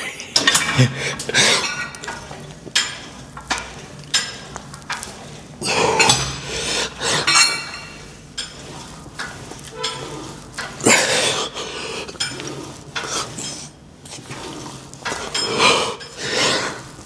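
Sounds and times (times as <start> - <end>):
metal gym weights clanking: 0.0 - 2.1, 5.7 - 8.6, 9.7 - 10.2.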